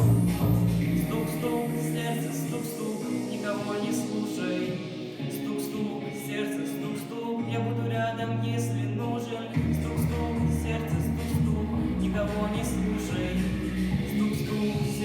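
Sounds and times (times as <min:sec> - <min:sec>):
sustained synth or bass notes: 0:00.0 - 0:02.4, 0:09.6 - 0:15.0
person singing: 0:00.0 - 0:15.0.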